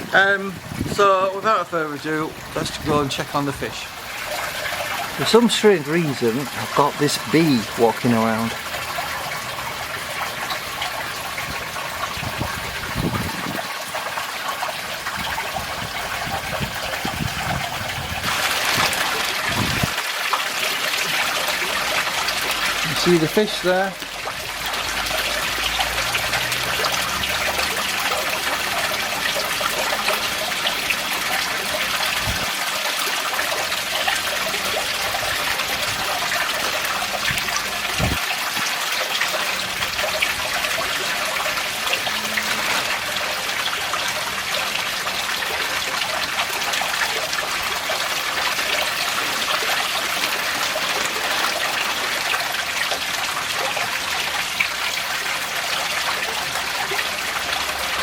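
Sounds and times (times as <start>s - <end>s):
water trickling into a pond: 0.0s - 58.0s
low thumps: 38.0s - 38.2s.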